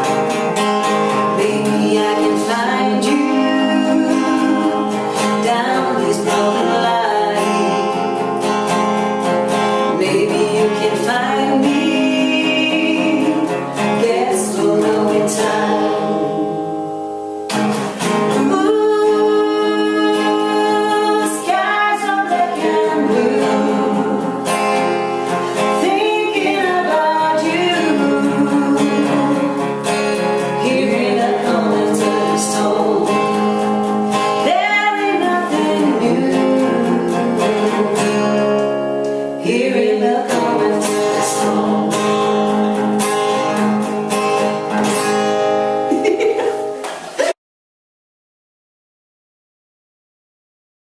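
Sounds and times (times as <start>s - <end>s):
person singing: 0.0s - 9.0s, 9.6s - 17.0s, 17.8s - 47.4s
strummed acoustic guitar: 0.0s - 47.4s.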